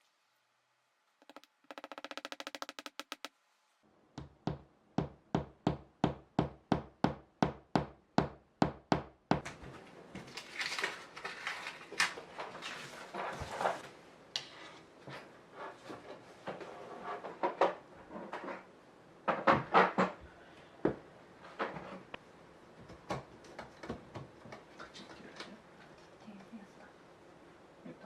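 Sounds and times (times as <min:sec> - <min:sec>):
hammer driving nail: 0:01.2 - 0:03.3
rapid clicks: 0:01.2 - 0:03.3
clattering and rustling of handling: 0:09.4 - 0:20.2.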